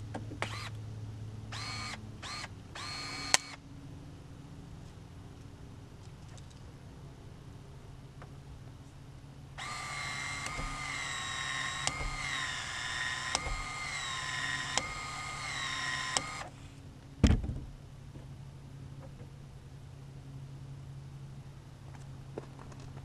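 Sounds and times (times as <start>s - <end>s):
small electric motor whining: 0.4s - 0.8s, 1.5s - 3.6s, 9.6s - 16.6s
motor clicks: 1.6s - 3.6s, 9.6s - 16.5s
heavy thump: 17.2s - 17.8s.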